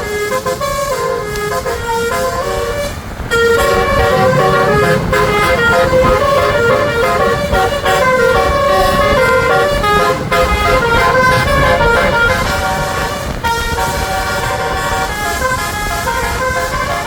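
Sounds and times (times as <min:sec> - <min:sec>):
musical air horn playing a tune: 0:00.0 - 0:17.0
low rumble: 0:03.0 - 0:08.2.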